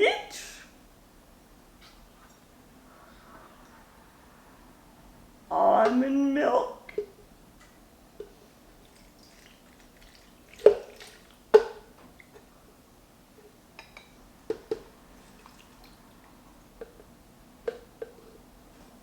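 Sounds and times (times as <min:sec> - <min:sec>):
kitchen containers knocking and clinking: 0:10.6 - 0:11.9.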